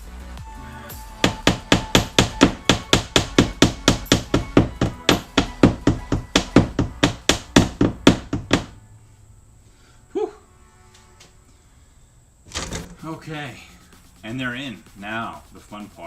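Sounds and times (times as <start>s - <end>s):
hammer striking: 1.2s - 8.7s, 12.5s - 13.2s.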